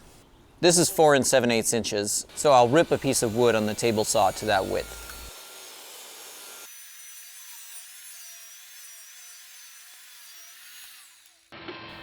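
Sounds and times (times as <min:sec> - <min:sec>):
faint saw whine: 0:02.3 - 0:06.6
table saw ripping wood: 0:02.3 - 0:11.5.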